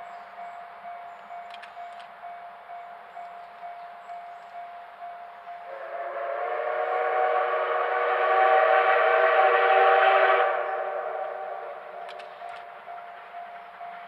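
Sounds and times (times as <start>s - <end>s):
steam locomotive whistle blast: 5.6s - 12.3s.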